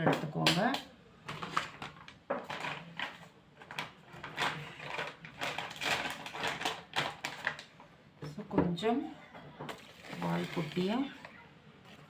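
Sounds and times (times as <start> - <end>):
objects knocking and scraping: 9.4 - 11.3.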